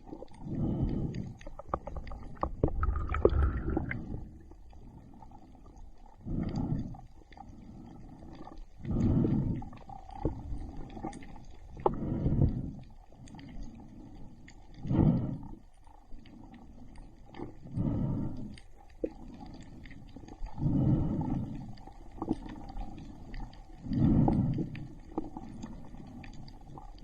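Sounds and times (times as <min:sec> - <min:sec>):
water gurgling: 0:00.0 - 0:06.8
breathing through a snorkel: 0:00.2 - 0:26.8.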